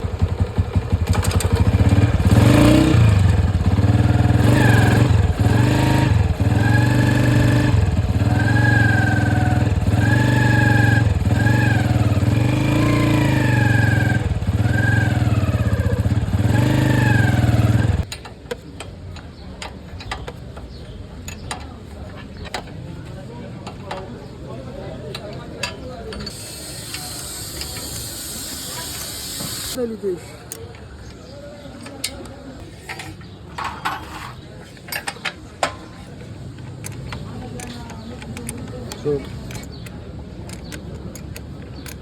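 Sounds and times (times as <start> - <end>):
motorcycle engine running: 0.0 - 18.1, 36.0 - 42.0.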